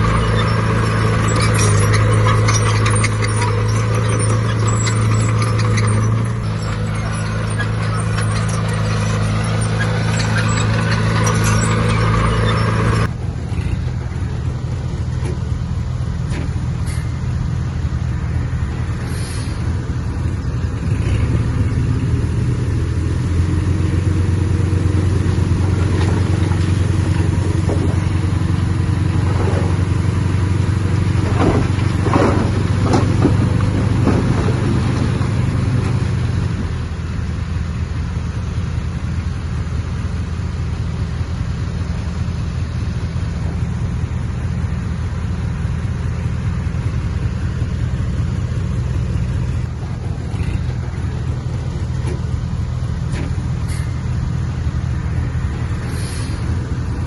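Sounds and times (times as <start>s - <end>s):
diesel earthmoving machinery: 0.0s - 57.0s.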